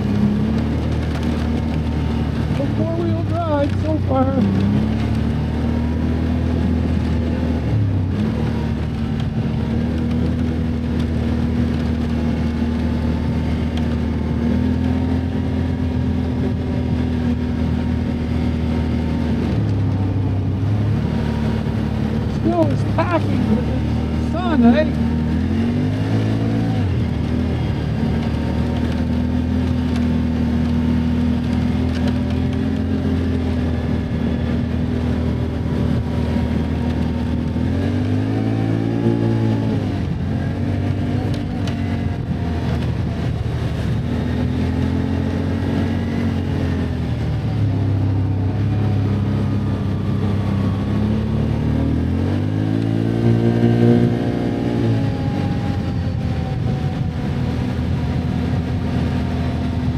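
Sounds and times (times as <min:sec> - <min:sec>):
atv engine revving: 0:00.0 - 0:59.9.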